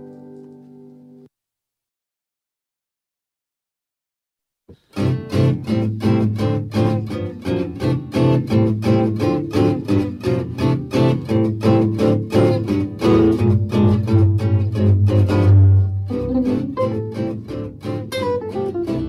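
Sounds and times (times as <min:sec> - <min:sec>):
acoustic guitar picking: 0:04.7 - 0:19.0
steady low bass: 0:13.8 - 0:17.2.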